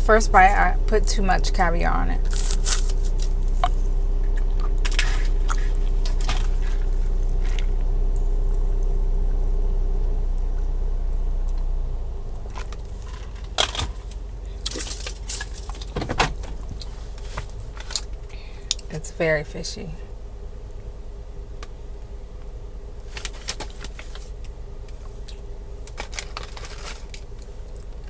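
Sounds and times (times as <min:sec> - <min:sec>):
steady low hum: 0:00.0 - 0:28.0
person eating crunchily: 0:02.3 - 0:07.8.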